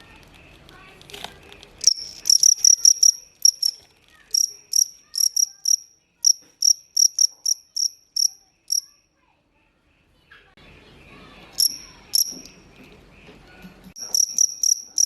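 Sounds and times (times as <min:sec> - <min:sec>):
cricket chirping: 0:01.8 - 0:08.9, 0:11.6 - 0:12.5, 0:14.0 - 0:15.0.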